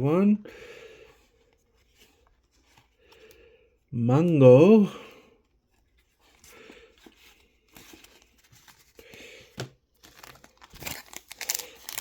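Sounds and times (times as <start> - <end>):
trading cards rustling: 5.8 - 12.0.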